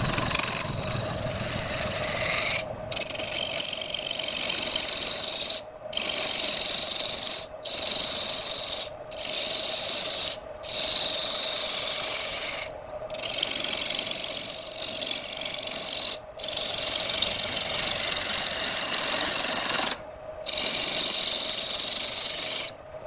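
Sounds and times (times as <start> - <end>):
lathe hum: 0.0 - 22.8
tool rubbing on spinning wood: 0.0 - 22.8.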